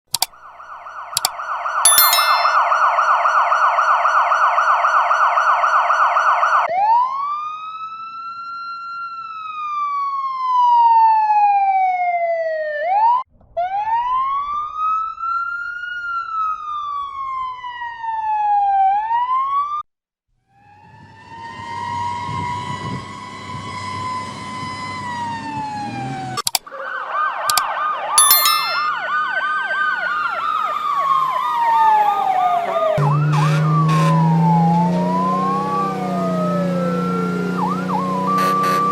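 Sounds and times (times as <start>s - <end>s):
sharp clicks: 0.0s - 0.3s, 26.4s - 26.6s
emergency vehicle siren: 0.3s - 19.7s, 20.6s - 38.9s.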